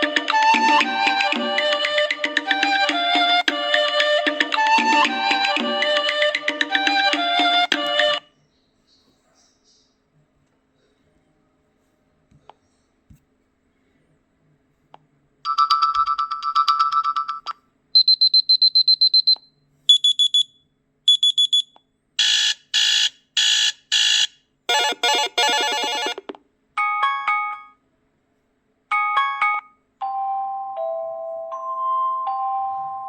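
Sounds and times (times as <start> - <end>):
phone ringtones: 15.5 - 19.3, 23.4 - 26.3.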